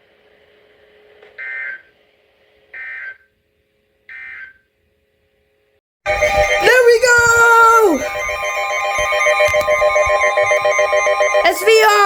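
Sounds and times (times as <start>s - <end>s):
digital data tone bursts: 6.1s - 12.0s.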